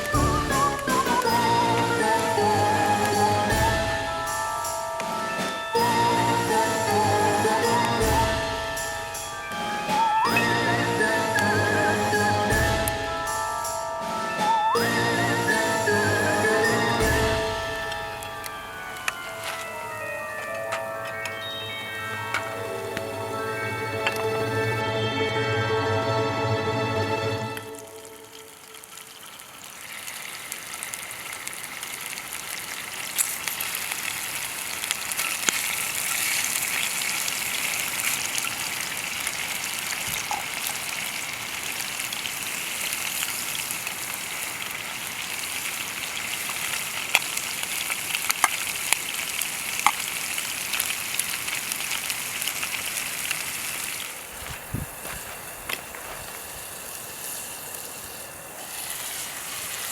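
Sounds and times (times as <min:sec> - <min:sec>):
food sizzling in a skillet: 0:27.6 - 0:59.9.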